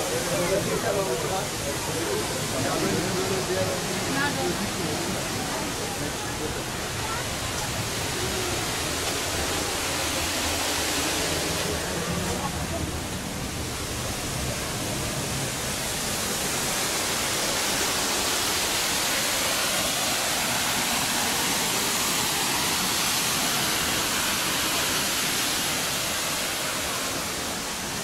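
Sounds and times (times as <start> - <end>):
waterfall rushing: 0.0 - 28.0.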